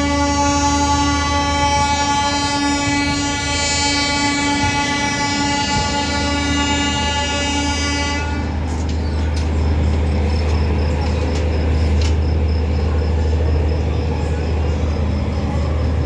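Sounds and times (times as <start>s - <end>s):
train horn: 0.0s - 8.8s
low rumble of moving train: 0.0s - 16.0s.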